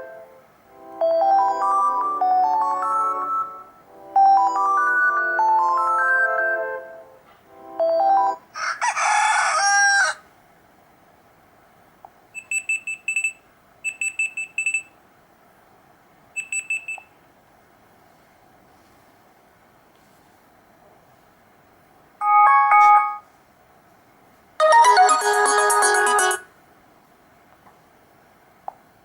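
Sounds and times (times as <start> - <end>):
phone ringtone melody: 0.8 - 7.0, 7.6 - 8.5, 22.2 - 23.3, 24.6 - 26.5
recorded rooster crow: 8.5 - 10.4
high electronic beeping: 24.6 - 26.4.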